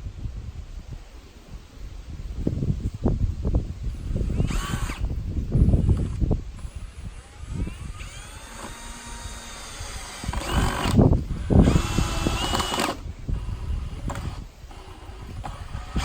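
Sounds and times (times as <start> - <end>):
power drill driving screws into wood: 4.0 - 5.1, 5.7 - 16.0.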